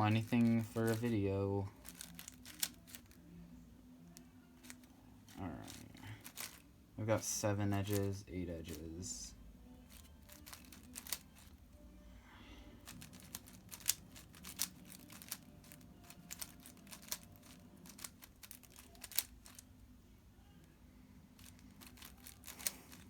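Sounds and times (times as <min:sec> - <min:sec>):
plastic puzzle cube clicking: 0:01.8 - 0:03.2, 0:05.7 - 0:06.6, 0:09.9 - 0:11.5, 0:12.8 - 0:19.6, 0:21.4 - 0:23.0.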